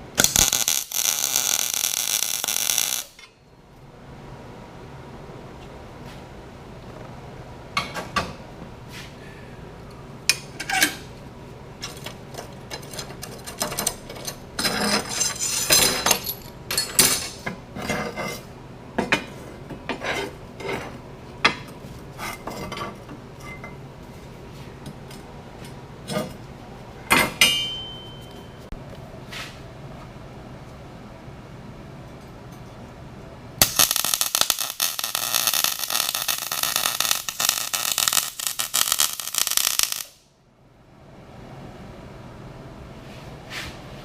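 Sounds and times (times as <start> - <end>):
metal parts clinking and rattling: 11.8 - 17.5
short metallic ring: 27.2 - 28.6.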